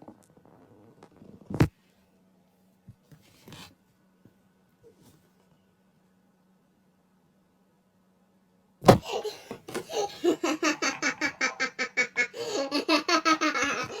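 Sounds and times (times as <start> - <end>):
person laughing: 9.1 - 14.0.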